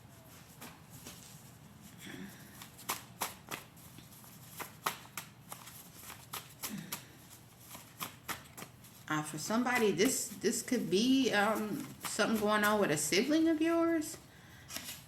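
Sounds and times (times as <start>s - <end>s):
cards being shuffled: 2.5s - 13.4s, 14.7s - 15.0s.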